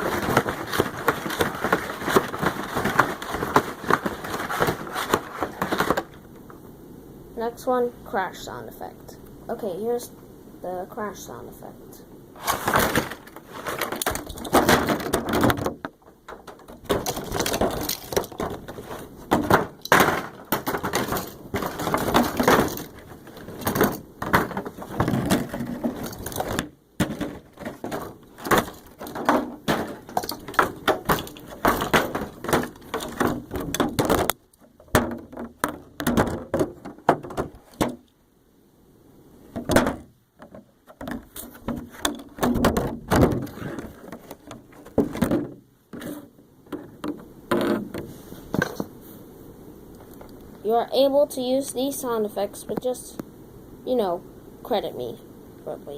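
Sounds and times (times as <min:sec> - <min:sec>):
hard objects banging and clattering: 0:00.0 - 0:06.6, 0:12.4 - 0:38.1, 0:39.5 - 0:49.0.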